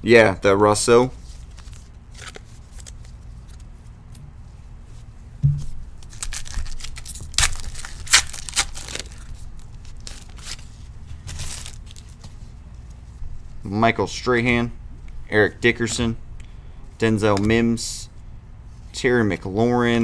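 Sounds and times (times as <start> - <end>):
wrapper crinkling: 1.2 - 3.7, 6.0 - 12.2
foil pack tearing: 1.4 - 3.2, 6.0 - 12.2
soft thump: 5.4 - 5.9.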